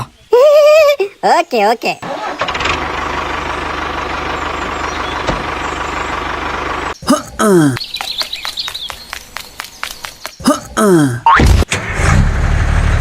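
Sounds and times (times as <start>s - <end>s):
truck engine running: 2.0s - 7.0s
short vocal sound falling in pitch: 7.0s - 7.8s, 10.4s - 11.4s.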